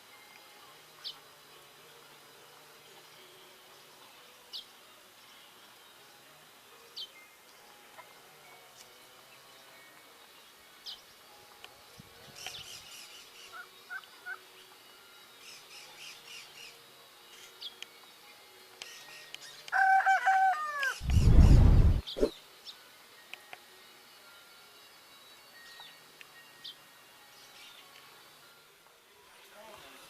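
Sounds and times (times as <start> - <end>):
small birds chirping: 20.8 - 22.8.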